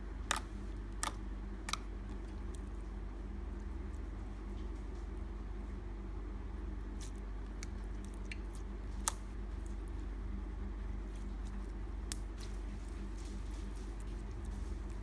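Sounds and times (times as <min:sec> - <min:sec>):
steady low hum: 0:00.0 - 0:15.0
slime sticky clicks and pops: 0:00.3 - 0:01.8.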